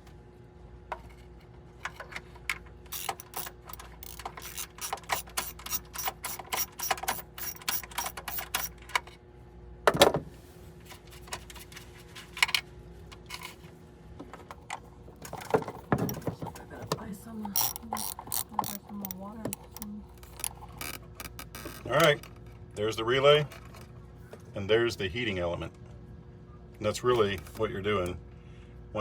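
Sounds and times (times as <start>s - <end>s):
socket ratchet clicking: 2.9s - 9.0s, 17.4s - 22.2s.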